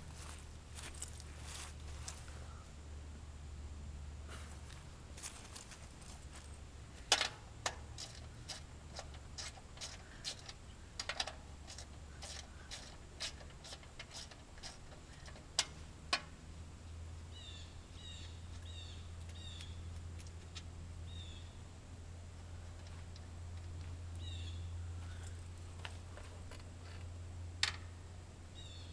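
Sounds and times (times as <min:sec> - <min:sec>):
small bird chirping: 0:17.3 - 0:20.1, 0:21.0 - 0:21.6, 0:24.2 - 0:25.5, 0:28.5 - 0:28.9.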